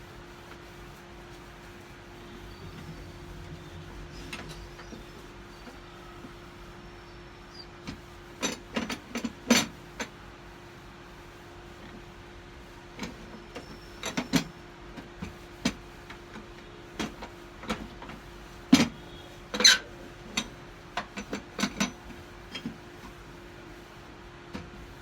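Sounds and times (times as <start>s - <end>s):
steady low hum: 0.0s - 8.4s.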